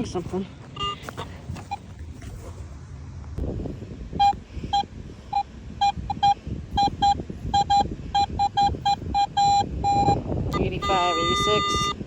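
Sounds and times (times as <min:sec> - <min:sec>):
wind rumble on microphone: 0:00.0 - 0:12.0
metal detector beeping: 0:00.8 - 0:01.8, 0:04.2 - 0:12.0.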